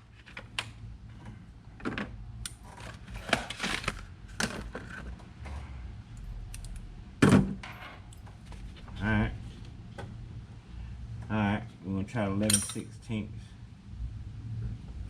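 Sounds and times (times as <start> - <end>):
metal wrenches clinking: 12.4 - 12.9.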